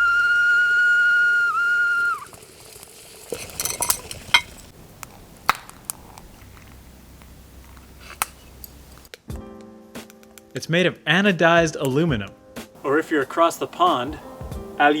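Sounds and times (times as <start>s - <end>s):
kettle whistling: 0.0s - 4.7s
metal kettle clinks and taps: 3.4s - 4.6s.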